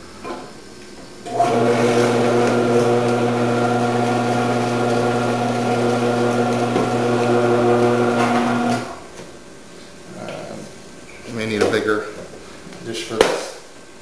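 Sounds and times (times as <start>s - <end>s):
electric motor humming: 1.3s - 9.0s.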